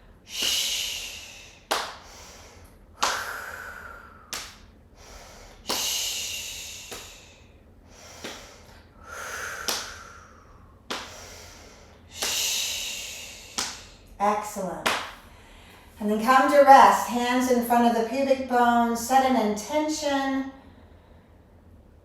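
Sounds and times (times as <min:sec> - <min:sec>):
person breathing out forcefully: 0:00.3 - 0:14.0.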